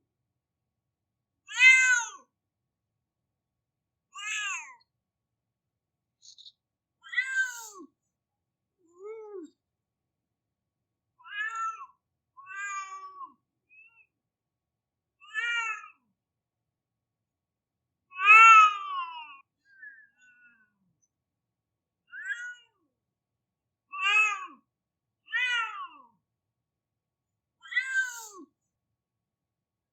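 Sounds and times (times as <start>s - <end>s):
cat meowing: 7.1s - 7.8s, 27.7s - 28.4s.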